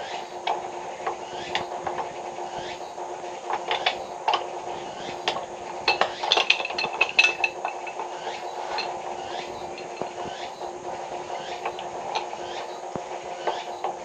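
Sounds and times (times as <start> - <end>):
steady background hum: 0.0 - 14.0
metal tools clinking: 5.3 - 8.0, 8.7 - 10.2.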